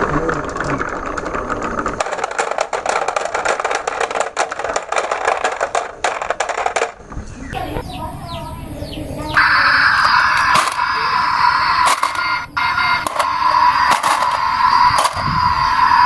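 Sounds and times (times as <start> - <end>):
marbles clattering down wooden track: 0.0 - 7.0, 13.0 - 14.4, 15.0 - 15.3
loud steady tone: 7.6 - 16.0.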